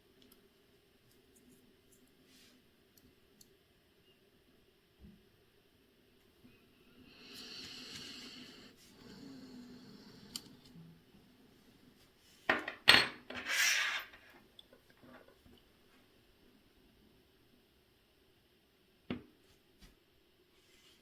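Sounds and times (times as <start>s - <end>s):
metal tools scraping and rubbing: 13.3s - 14.4s.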